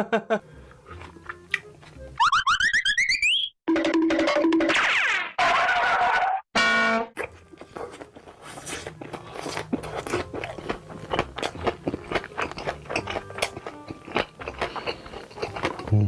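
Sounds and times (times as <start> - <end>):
crunchy chewing of food: 0.6 - 2.1, 7.2 - 16.0.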